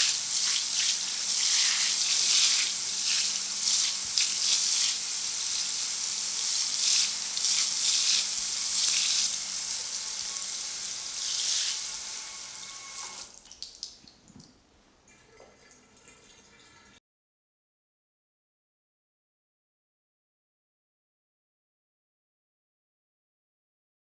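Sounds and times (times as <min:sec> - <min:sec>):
shower spray running: 0:00.0 - 0:13.4
water drips: 0:13.3 - 0:16.5.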